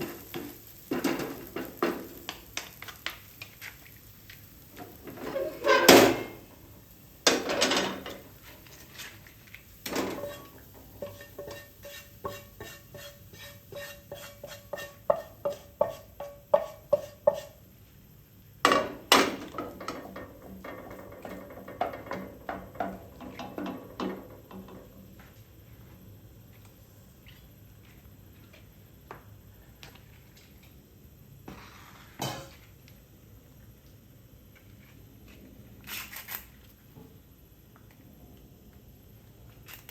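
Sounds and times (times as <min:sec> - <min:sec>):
utensils clanking on pots and pans: 0:00.0 - 0:02.3, 0:04.8 - 0:06.6, 0:07.2 - 0:08.3, 0:09.8 - 0:17.6, 0:18.7 - 0:25.1.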